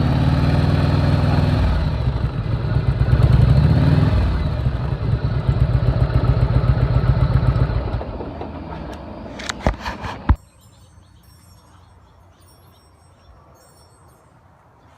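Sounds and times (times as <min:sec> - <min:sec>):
motorcycle engine running: 0:00.0 - 0:10.4.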